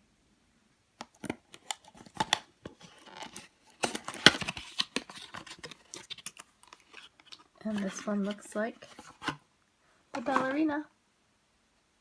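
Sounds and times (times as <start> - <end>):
packaging crinkling and tearing: 1.1 - 9.4.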